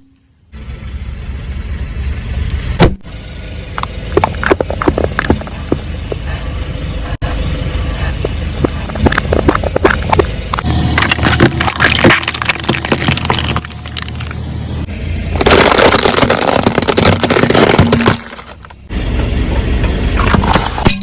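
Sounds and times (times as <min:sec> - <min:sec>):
car tyre crushing brittle objects: 0:03.7 - 0:06.5, 0:07.9 - 0:18.9, 0:19.9 - 0:21.0.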